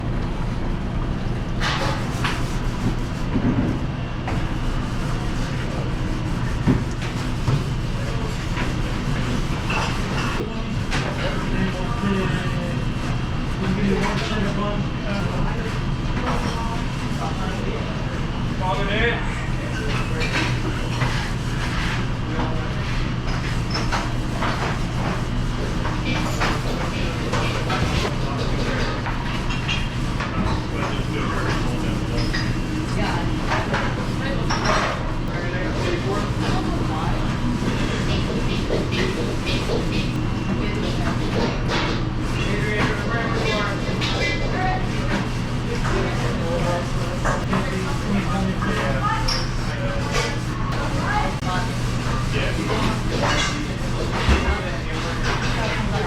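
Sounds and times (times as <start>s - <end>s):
low machine hum: 0.0s - 56.0s
dishes clinking and clattering: 25.8s - 46.1s, 52.1s - 56.0s.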